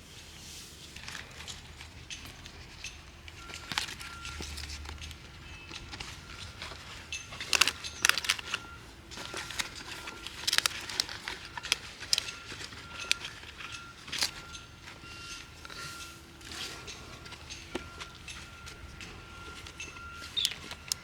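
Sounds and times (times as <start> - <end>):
leaves rustling and tearing: 3.4 - 14.5.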